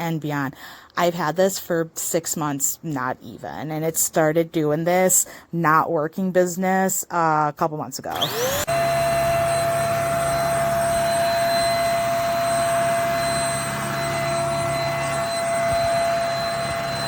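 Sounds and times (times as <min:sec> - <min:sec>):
vacuum motor whining: 0:08.1 - 0:17.0
low hum: 0:08.7 - 0:17.0.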